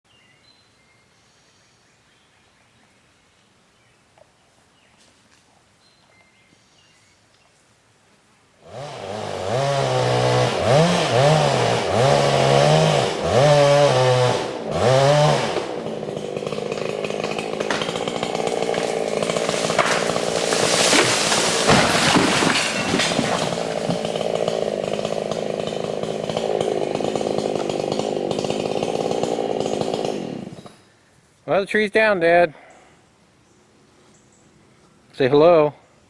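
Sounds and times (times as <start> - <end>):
chainsaw revving: 8.6 - 30.8.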